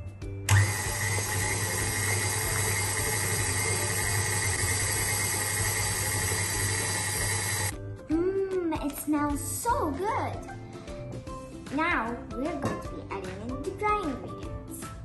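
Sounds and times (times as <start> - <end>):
electric mixer running: 0.5 - 7.7.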